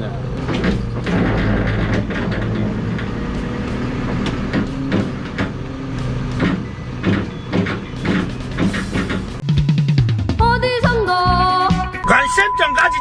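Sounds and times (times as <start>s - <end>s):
heavy vehicle engine running: 0.0s - 9.4s
short metallic knocks and clanks: 0.4s - 9.4s.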